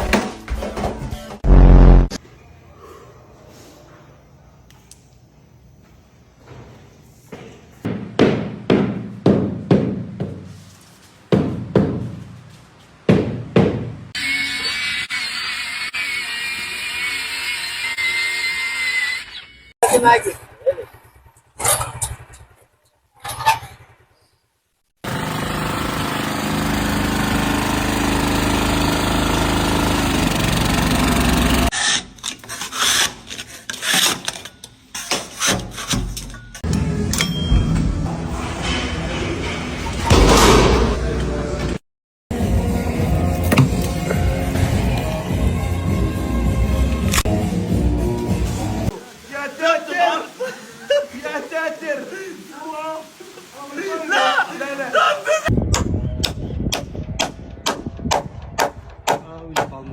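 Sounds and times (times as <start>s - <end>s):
heavy percussive hits: 1.4s - 2.2s, 40.1s - 41.2s
loud steady machine noise: 25.1s - 31.7s
knocks and scraping: 31.7s - 36.7s.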